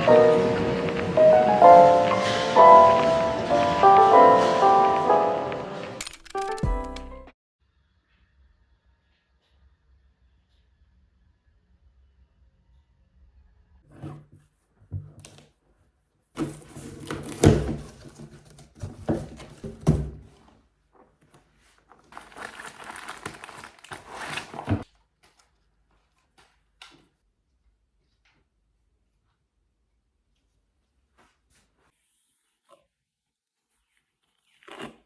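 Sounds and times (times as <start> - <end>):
objects knocking and thunking: 16.4 - 20.5
rustling and crinkling: 16.4 - 27.2.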